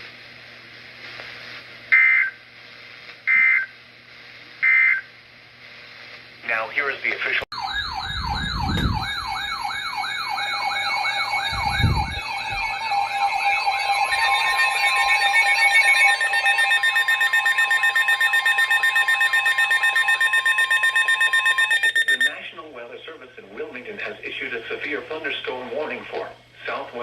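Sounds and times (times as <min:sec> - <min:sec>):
warbling siren-like alarm tone: 0:07.5 - 0:22.4
steady tone with pulsing beeps: 0:07.6 - 0:22.6.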